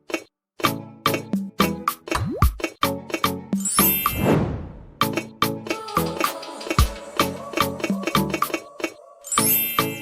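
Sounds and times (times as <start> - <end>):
music with punchy beat: 5.8 - 7.3.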